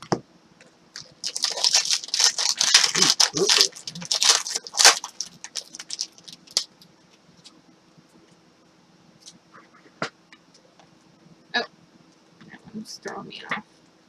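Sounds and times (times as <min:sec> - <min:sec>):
foil wrapper tearing and crinkling: 0:01.0 - 0:06.7.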